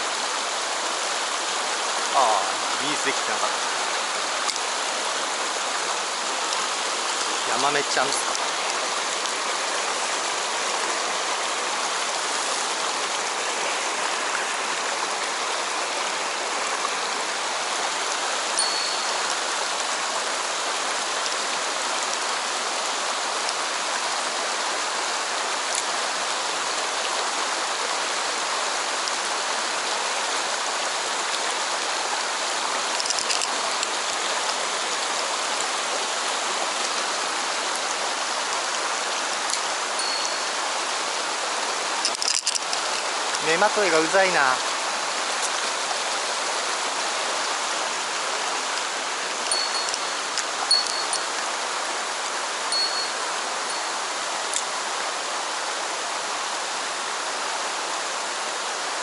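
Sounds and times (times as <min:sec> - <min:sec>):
stream water rushing: 0:00.0 - 0:59.0.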